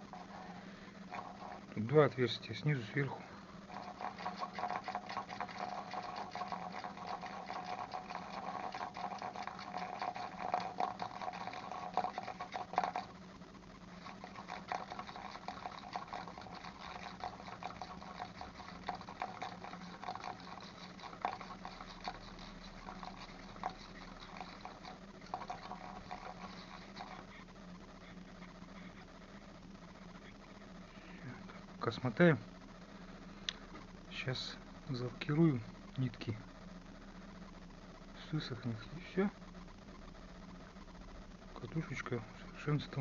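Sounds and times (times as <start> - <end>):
thread winding rustle: 0.0 - 13.2, 13.8 - 27.6
low steady hum: 0.0 - 43.0.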